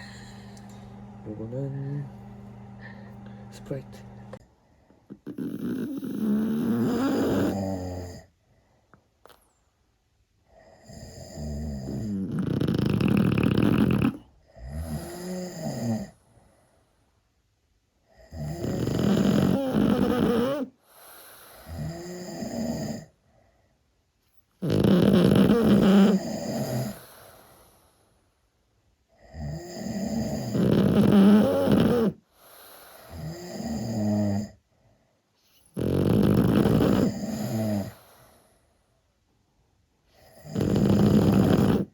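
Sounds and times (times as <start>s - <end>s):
person snoring: 0.0s - 4.4s, 5.1s - 8.3s, 10.5s - 16.2s, 18.2s - 23.1s, 24.6s - 27.3s, 29.3s - 34.6s, 35.8s - 38.4s, 40.2s - 41.9s.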